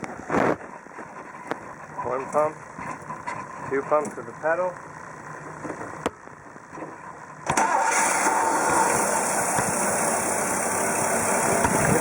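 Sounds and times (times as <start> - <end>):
car engine starting and running: 7.4 - 12.0.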